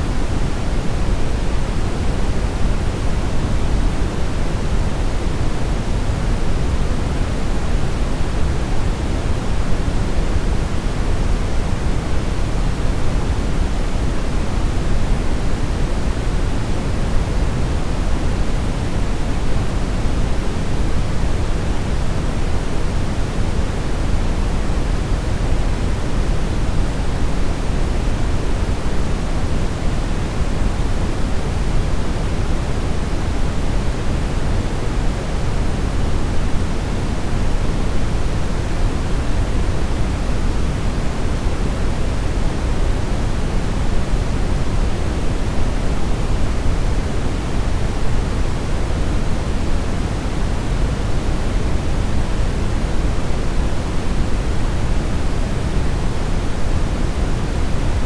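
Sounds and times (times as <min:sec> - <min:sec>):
brown noise hiss: 0:00.0 - 0:58.0.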